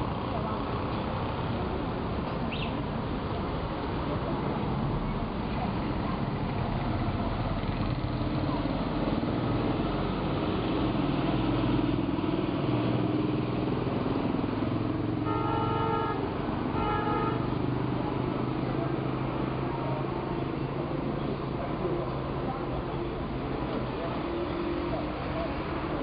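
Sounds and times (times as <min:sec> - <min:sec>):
road traffic: 0:00.0 - 0:26.0
vehicle horn honking: 0:15.2 - 0:17.5.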